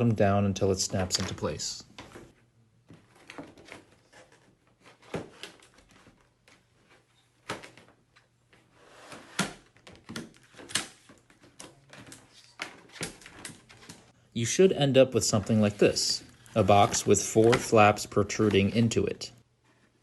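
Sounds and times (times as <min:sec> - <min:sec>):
cardboard rustling and scraping: 0:02.0 - 0:14.1, 0:15.2 - 0:20.0.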